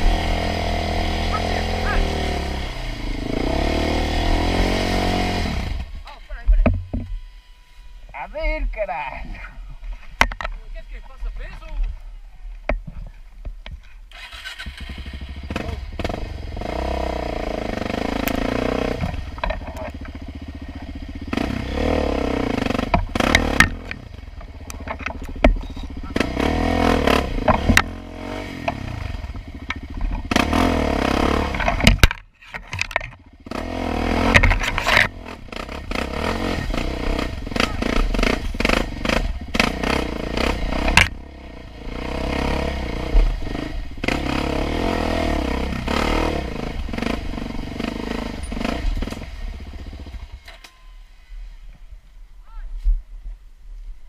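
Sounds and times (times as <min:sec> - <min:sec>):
quad engine revving: 0:00.0 - 0:06.8, 0:14.1 - 0:32.1, 0:32.8 - 0:50.5.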